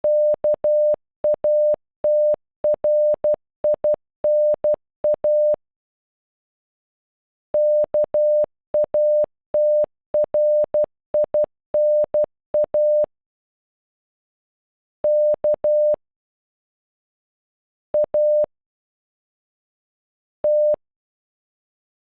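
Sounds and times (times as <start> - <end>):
morse code beeps: 0.0 - 5.6, 7.6 - 13.1, 15.1 - 16.0, 18.0 - 18.5, 20.5 - 20.8.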